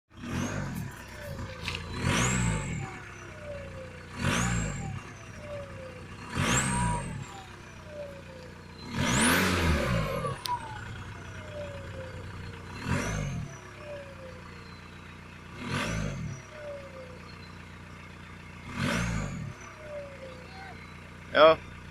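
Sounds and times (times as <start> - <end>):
diesel engine revving: 0.1 - 21.9
turbocharger whistle: 0.2 - 15.0, 15.6 - 17.7, 18.7 - 21.6.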